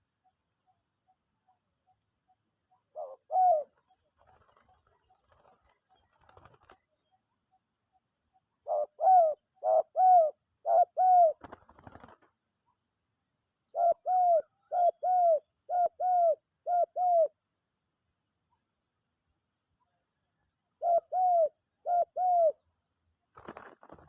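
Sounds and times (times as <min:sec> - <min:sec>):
dove cooing: 0:02.7 - 0:06.8, 0:08.6 - 0:12.1, 0:13.7 - 0:17.4, 0:20.8 - 0:22.6.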